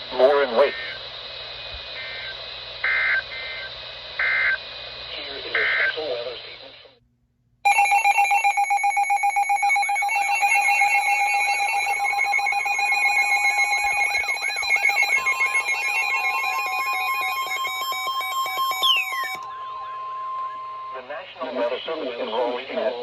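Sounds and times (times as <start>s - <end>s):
electronic alarm tones pulsing: 7.7s - 21.4s
warbling chirp: 10.2s - 21.0s.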